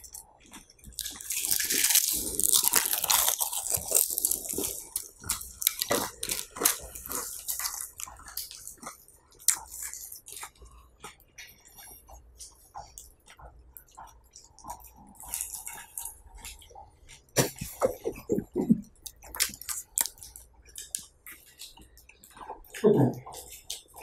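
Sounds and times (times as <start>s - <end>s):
potato chips crunching: 0.0s - 10.6s, 14.8s - 16.2s, 17.4s - 21.1s.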